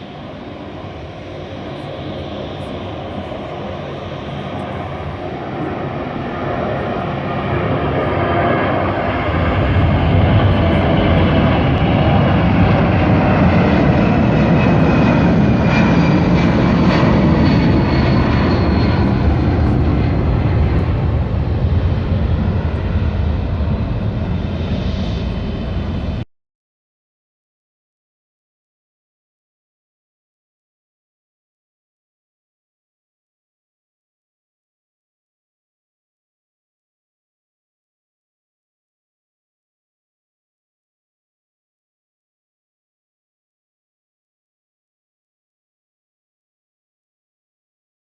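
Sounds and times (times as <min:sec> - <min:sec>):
jet engines roaring: 0:00.0 - 0:26.2.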